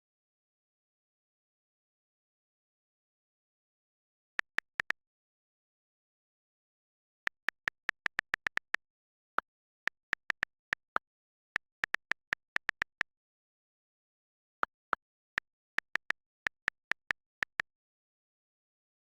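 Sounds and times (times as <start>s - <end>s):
short sharp clicks: 15.4s - 17.7s.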